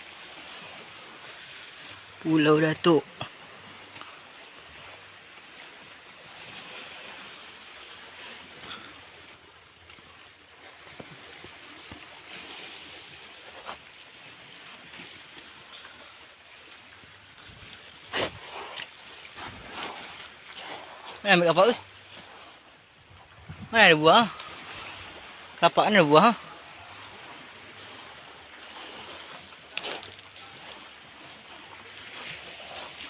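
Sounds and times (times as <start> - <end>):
sea waves: 0.0 - 33.0.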